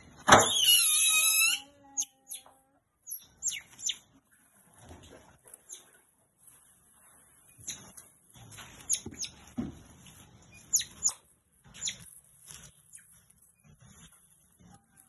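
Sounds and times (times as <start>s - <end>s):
otter squeaking: 0.3s - 4.3s, 7.2s - 15.0s
soft scuffling: 3.6s - 15.0s.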